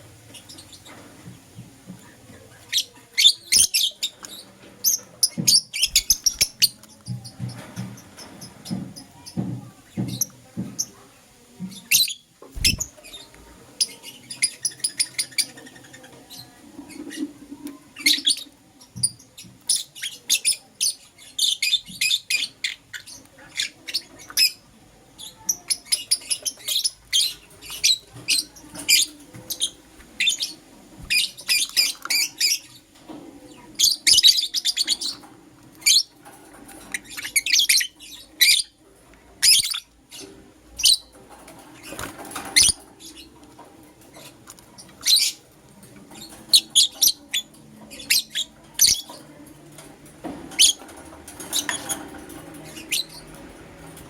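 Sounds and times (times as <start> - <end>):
lovebirds chirping and trilling: 0.0 - 54.0.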